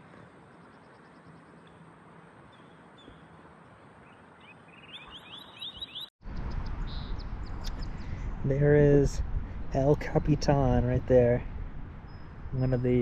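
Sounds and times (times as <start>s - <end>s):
faint outdoor background: 0.0s - 13.0s
small bird chirping: 4.0s - 8.2s.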